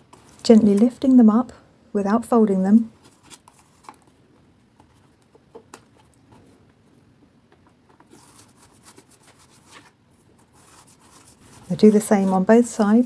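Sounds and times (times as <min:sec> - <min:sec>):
paper rustling: 0:03.0 - 0:04.2, 0:07.8 - 0:12.8.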